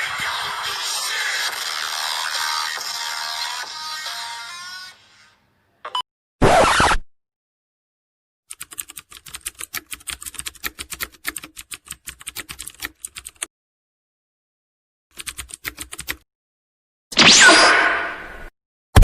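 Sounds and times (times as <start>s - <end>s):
keyboard keys clicking: 8.5s - 13.4s.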